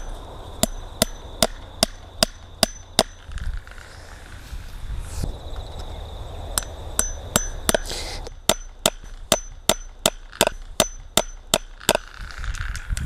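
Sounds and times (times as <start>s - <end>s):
hammer striking staples into wood: 8.5s - 12.1s.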